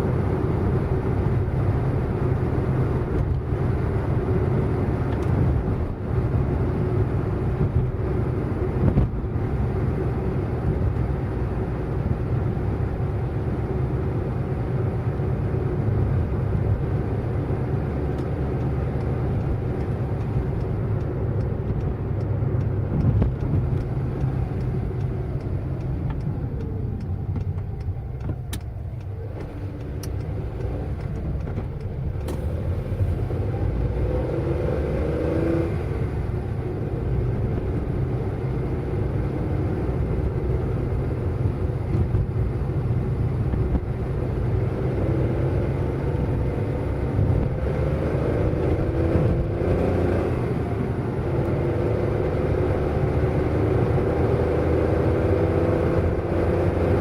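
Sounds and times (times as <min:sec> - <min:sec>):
car engine and road rumble: 0:00.0 - 0:57.0
sharp clicks: 0:18.1 - 0:32.5.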